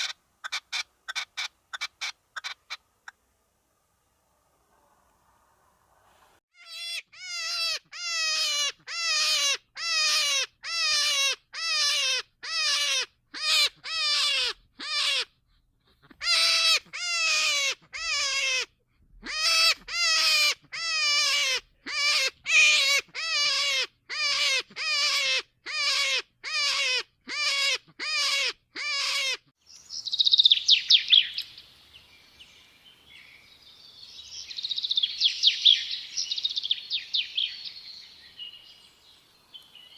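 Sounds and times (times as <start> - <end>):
bird calling: 16.1 - 39.9
high bird twittering: 29.7 - 31.7, 32.4 - 39.9.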